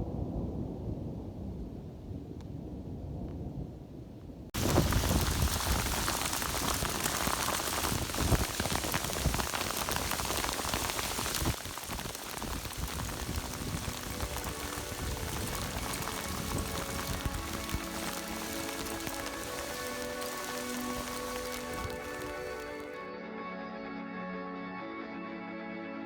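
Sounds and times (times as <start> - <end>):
rain hissing: 4.6 - 23.0.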